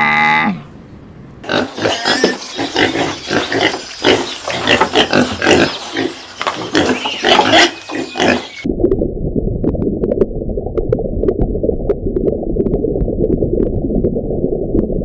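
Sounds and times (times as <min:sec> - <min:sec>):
animals making rough calls: 0:01.4 - 0:08.7.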